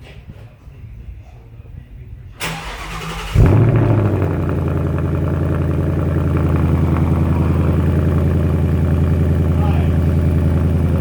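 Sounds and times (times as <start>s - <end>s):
car engine revving then idling: 2.5s - 11.0s.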